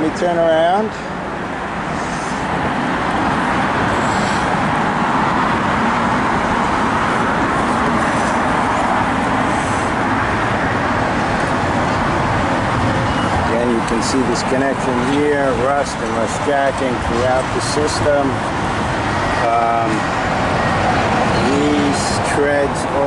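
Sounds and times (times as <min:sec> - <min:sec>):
city street traffic: 0:00.0 - 0:23.0.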